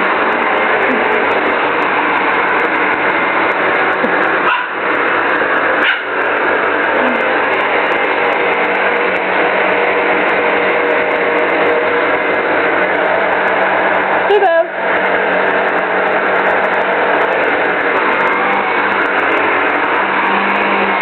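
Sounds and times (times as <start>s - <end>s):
vacuum cleaner running: 0.0s - 21.0s
puppy barking and yipping: 4.4s - 4.8s, 5.8s - 6.2s.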